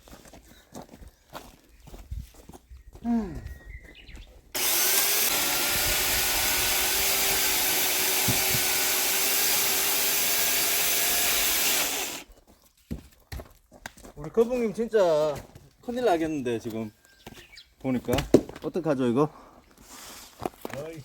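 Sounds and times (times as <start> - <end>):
electric chainsaw cutting wood: 4.6 - 12.3.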